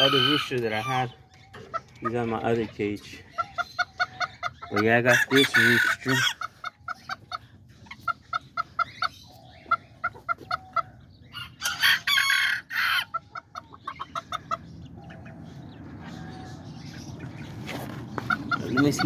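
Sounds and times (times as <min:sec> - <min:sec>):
rooster crowing: 0:00.0 - 0:00.6
chickens clucking: 0:00.0 - 0:19.0.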